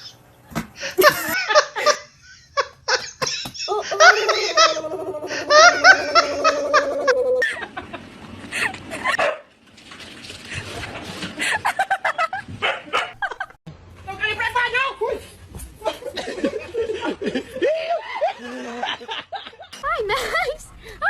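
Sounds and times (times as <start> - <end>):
people laughing: 1.0 - 9.2, 11.4 - 12.5, 15.8 - 20.6.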